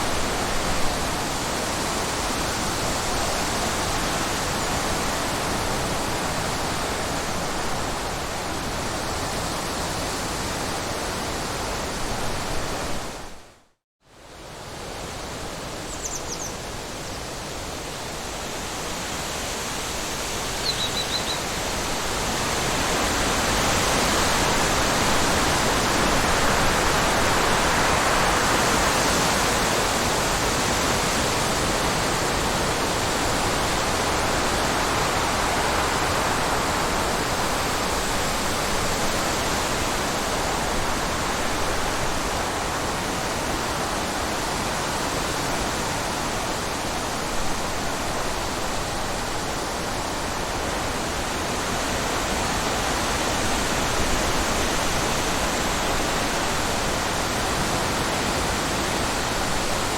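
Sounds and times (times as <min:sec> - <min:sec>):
faint high chirps: 0:20.6 - 0:21.5.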